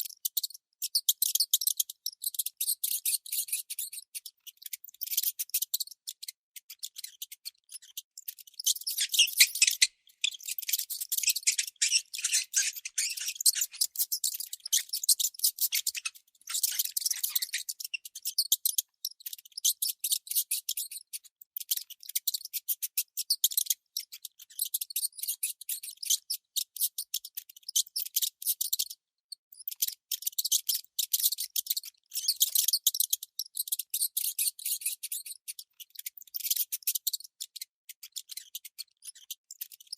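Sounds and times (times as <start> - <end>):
mouse gnawing: 6.6 - 20.0.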